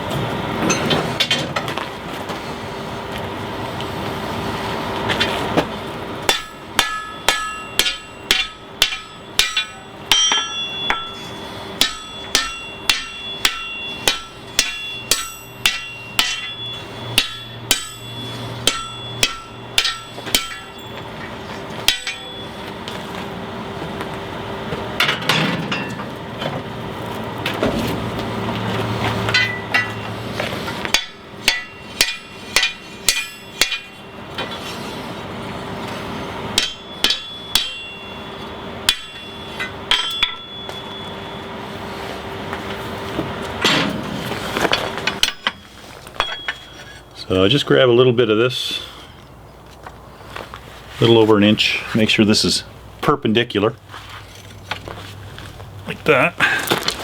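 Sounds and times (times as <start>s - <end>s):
hammer striking steel on anvil: 6.3s - 21.1s, 21.8s - 22.8s, 29.3s - 34.7s, 36.5s - 41.4s, 43.6s - 47.0s.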